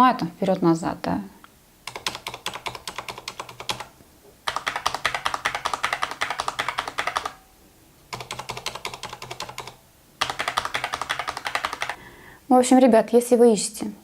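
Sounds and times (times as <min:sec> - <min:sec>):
mechanical keyboard typing: 0:01.8 - 0:07.4, 0:08.1 - 0:12.0.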